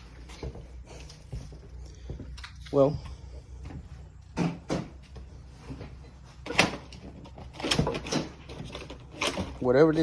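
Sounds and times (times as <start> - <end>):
objects knocking and clunking: 3.6 - 10.0.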